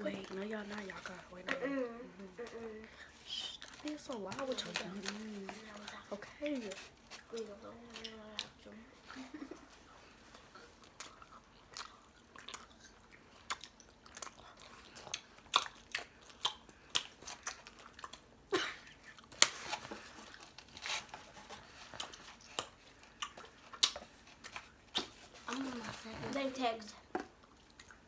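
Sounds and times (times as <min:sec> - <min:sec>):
cookies crunching: 0:09.3 - 0:28.0.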